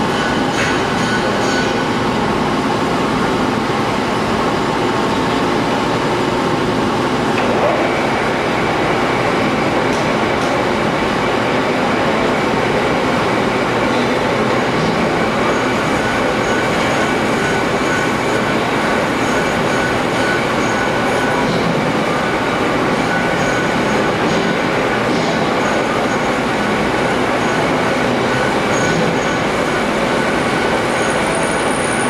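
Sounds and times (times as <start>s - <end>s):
machinery running: 0.0s - 32.0s.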